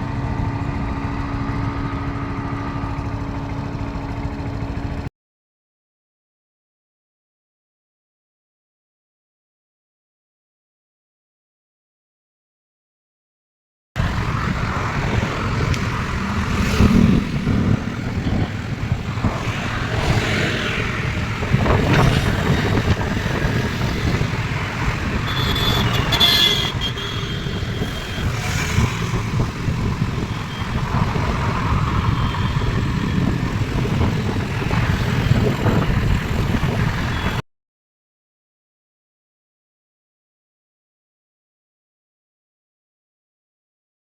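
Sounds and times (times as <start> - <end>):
road traffic noise: 0.0 - 5.1, 14.0 - 37.4
high-pitched car horn: 25.0 - 28.7.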